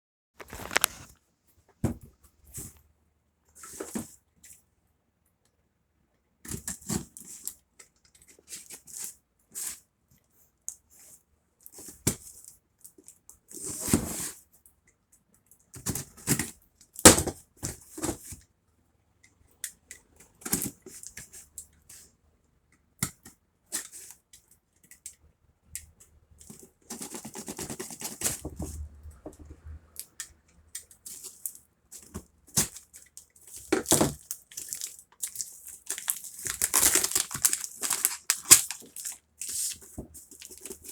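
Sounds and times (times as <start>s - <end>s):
packaging rustling and tearing: 0.4s - 1.1s, 33.5s - 40.9s.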